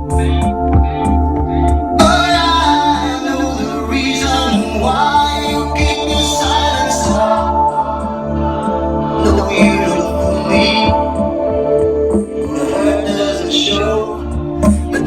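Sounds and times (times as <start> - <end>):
song with singing and bass: 0.0 - 15.0.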